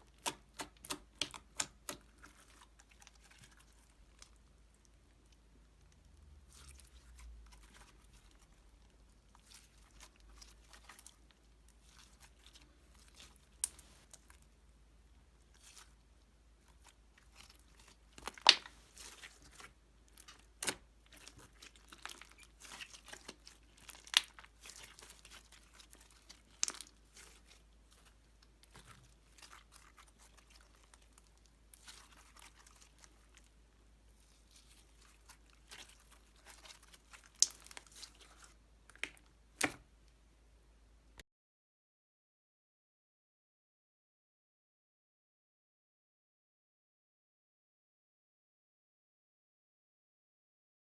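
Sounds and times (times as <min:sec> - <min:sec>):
slime crackling crunch: 0:05.9 - 0:14.4, 0:16.6 - 0:33.5, 0:34.2 - 0:39.8.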